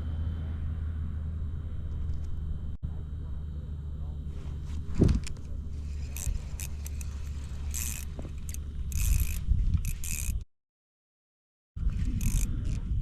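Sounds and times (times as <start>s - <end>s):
steady low rumble: 0.0s - 10.4s, 11.8s - 13.0s
scraping and rattling noises: 4.3s - 10.4s.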